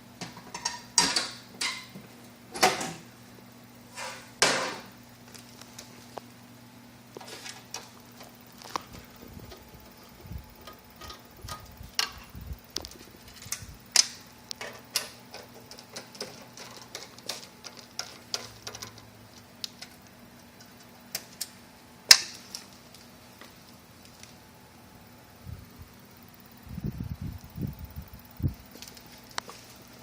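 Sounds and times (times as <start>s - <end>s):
faint low hum: 1.5s - 30.0s
hardware and tools clicking: 7.1s - 24.4s.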